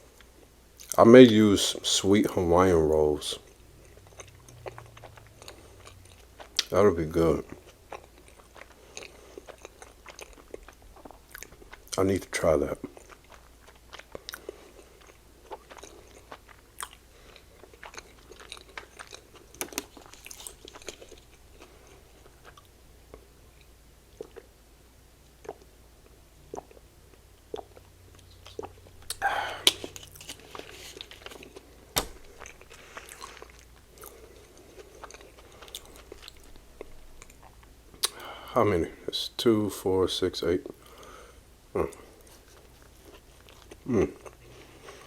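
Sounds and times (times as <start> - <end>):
wet chewing mouth clicks: 3.4 - 6.8, 7.4 - 12.0, 25.4 - 25.7, 26.5 - 26.8, 27.5 - 30.3.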